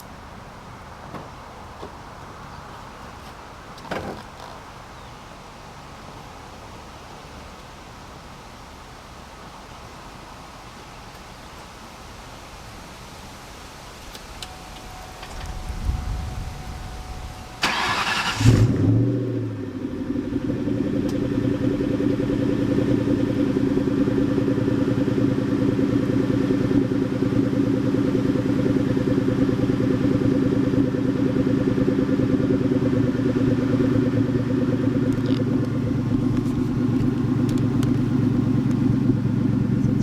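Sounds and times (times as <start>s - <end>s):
car engine starting and idling: 14.0s - 40.0s
starter motor cranking: 17.6s - 18.7s.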